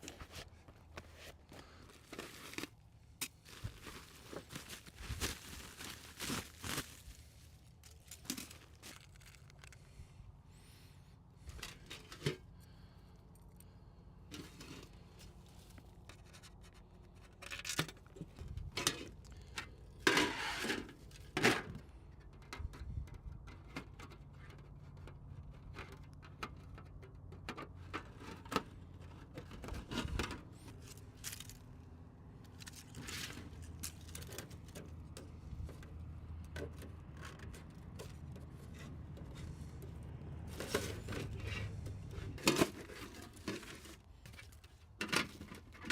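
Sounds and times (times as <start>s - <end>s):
rustling: 0.0s - 10.1s.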